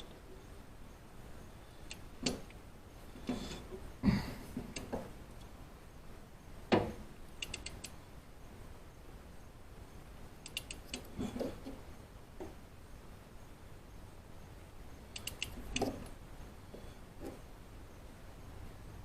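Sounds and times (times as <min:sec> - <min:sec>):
quick ratchet clicks: 0:07.4 - 0:08.0.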